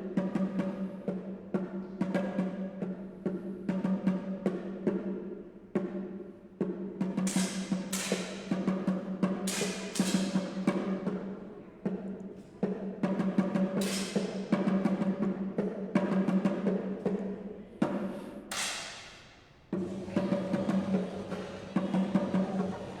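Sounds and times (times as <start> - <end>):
drum strikes with ringing tails: 6.7 - 11.3.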